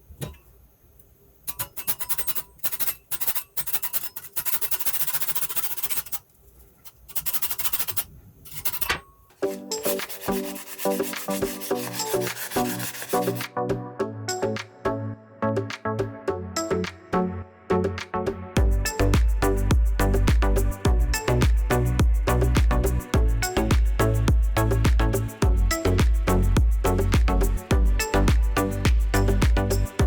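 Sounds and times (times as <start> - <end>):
wood sanded by hand: 3.2 - 6.2, 7.1 - 8.9, 9.5 - 13.5
music with bass line: 9.4 - 30.0.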